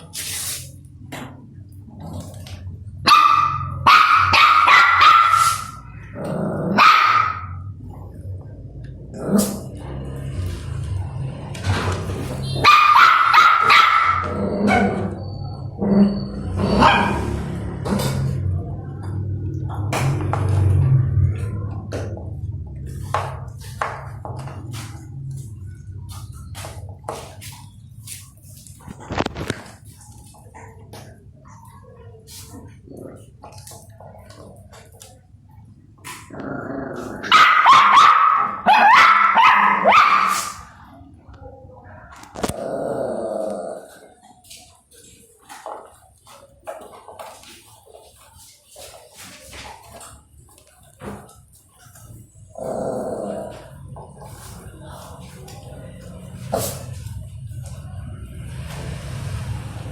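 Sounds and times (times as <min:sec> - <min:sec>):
puppy barking: 0:03.0 - 0:05.9, 0:06.7 - 0:07.7, 0:12.5 - 0:15.3, 0:16.0 - 0:17.5, 0:37.2 - 0:40.7
puppy growling: 0:05.3 - 0:11.8, 0:14.0 - 0:18.4, 0:36.0 - 0:37.4, 0:42.1 - 0:44.4, 0:51.8 - 0:57.8.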